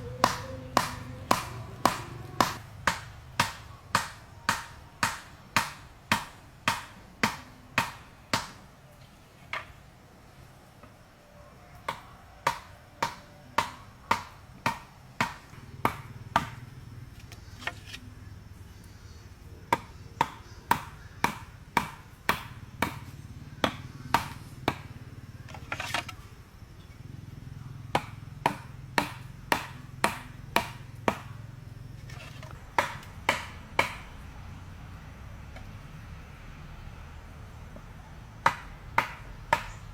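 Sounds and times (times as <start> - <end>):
hand tool striking rapidly: 0.1 - 7.4.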